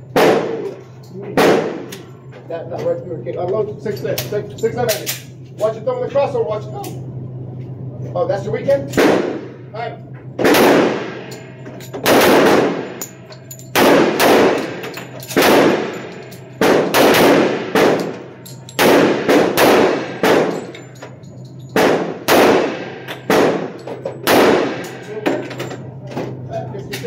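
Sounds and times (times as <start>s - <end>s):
handgun shots echoing indoors: 0.1s - 0.7s, 1.4s - 2.1s, 8.9s - 9.6s, 10.4s - 25.6s.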